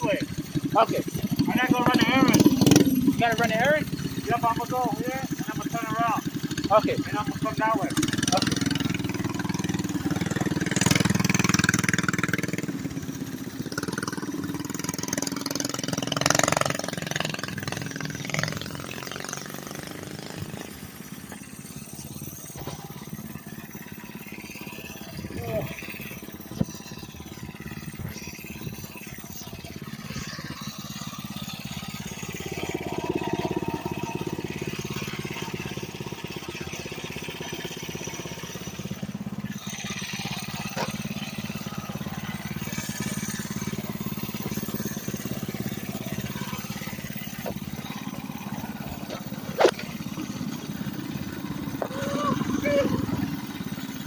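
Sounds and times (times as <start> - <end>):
minibike engine running: 0.0 - 54.0.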